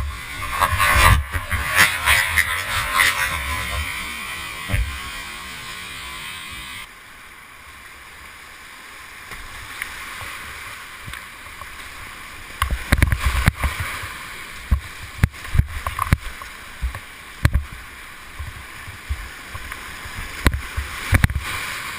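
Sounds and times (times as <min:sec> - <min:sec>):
river rushing: 0:00.0 - 0:12.6.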